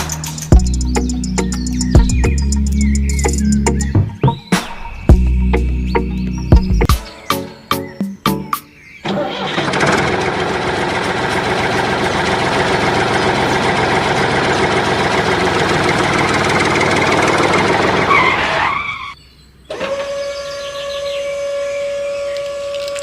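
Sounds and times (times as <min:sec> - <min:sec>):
loud mechanical running noise: 0:09.0 - 0:18.1.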